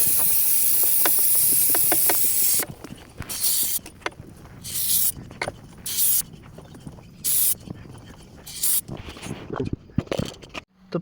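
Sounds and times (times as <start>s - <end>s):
aerosol spray hissing: 0.0s - 2.7s, 3.3s - 3.8s, 4.6s - 5.2s, 5.8s - 6.2s, 7.2s - 7.6s, 8.5s - 8.8s.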